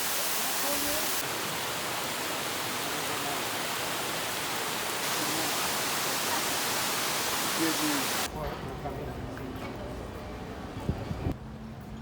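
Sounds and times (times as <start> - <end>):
steady hiss: 0.0 - 8.3.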